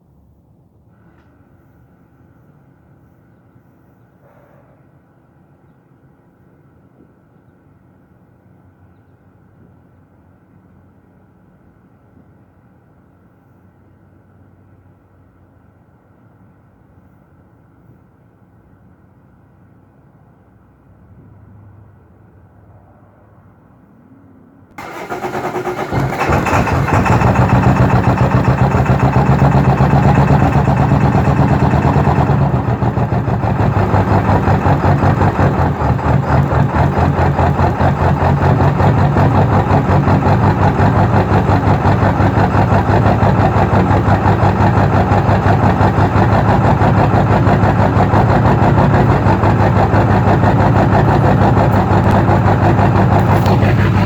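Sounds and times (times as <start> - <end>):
diesel engine starting and clattering: 0.9 - 3.1, 24.7 - 54.0.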